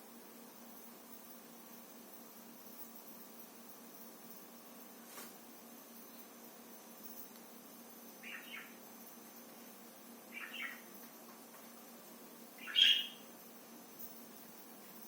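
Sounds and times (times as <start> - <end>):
parrot whistling: 12.6 - 13.2.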